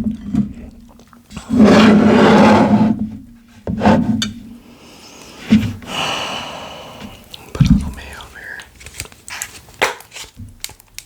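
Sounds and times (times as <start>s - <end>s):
quiet voiced sounds: 6.0s - 8.8s.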